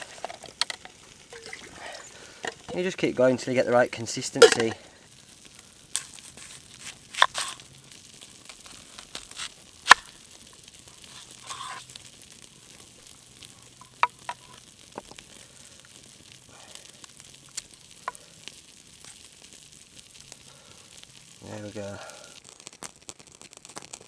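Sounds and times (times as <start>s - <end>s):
utensil knocking container: 0.0s - 2.8s, 4.4s - 4.8s
campfire sizzle and crackle: 0.0s - 24.0s.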